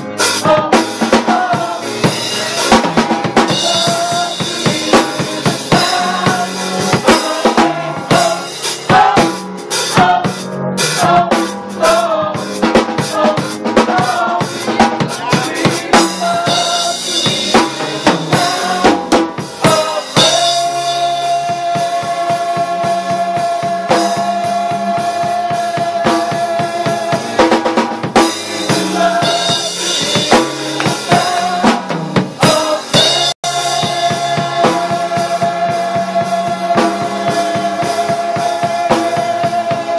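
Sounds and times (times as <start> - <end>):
drum kit beat: 0.0 - 39.9
gospel band playing: 0.0 - 39.9.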